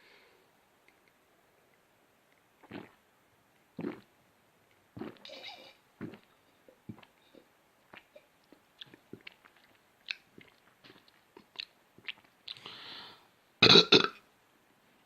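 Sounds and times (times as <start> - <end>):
breathy exhale: 12.6 - 13.3
loud burp: 13.6 - 14.2.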